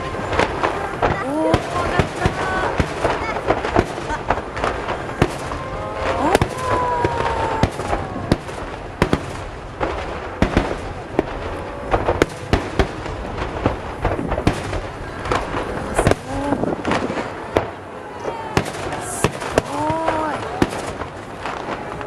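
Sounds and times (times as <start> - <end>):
fireworks bursting with bangs: 0.0 - 22.0.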